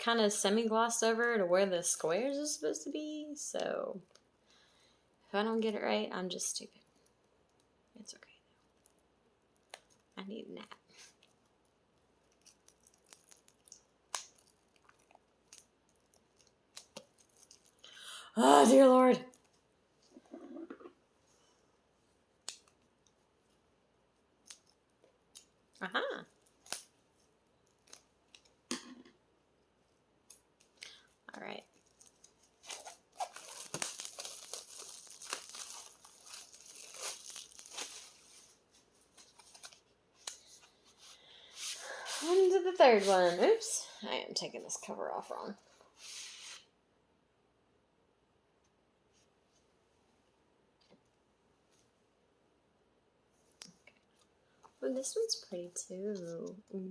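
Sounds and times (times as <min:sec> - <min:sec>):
packaging clicks and rustles: 0:12.3 - 0:17.8, 0:31.7 - 0:38.2.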